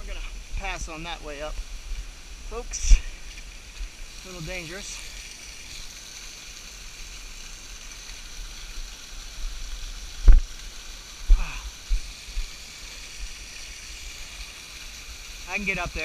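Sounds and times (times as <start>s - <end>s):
rushing creek water: 0.0s - 16.0s.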